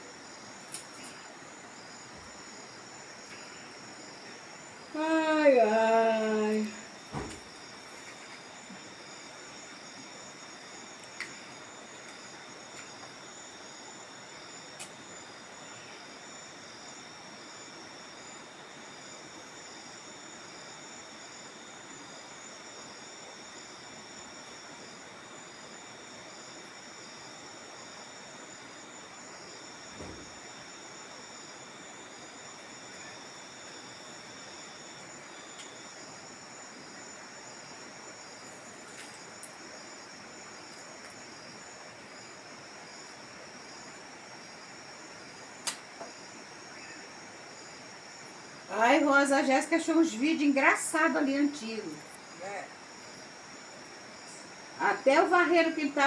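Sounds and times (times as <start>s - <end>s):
crickets chirring: 0.0s - 56.0s
dull thump: 7.1s - 7.4s
sharp clicks: 45.6s - 45.8s.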